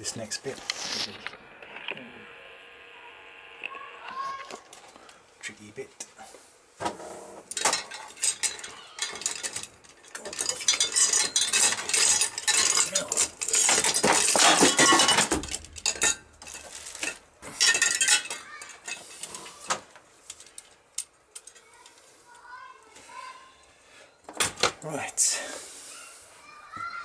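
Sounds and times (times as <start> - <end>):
metal parts and tools clinking: 7.5 - 22.0.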